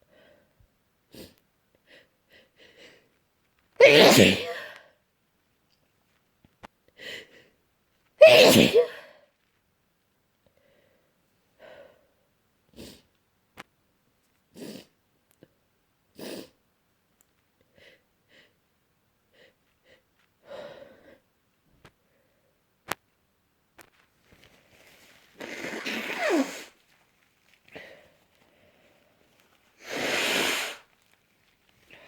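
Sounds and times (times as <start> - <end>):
person sneezing: 3.8 - 4.8, 8.2 - 9.2, 25.4 - 26.8, 29.8 - 30.9
person sniffling: 3.8 - 4.8, 25.4 - 26.8, 29.8 - 30.9.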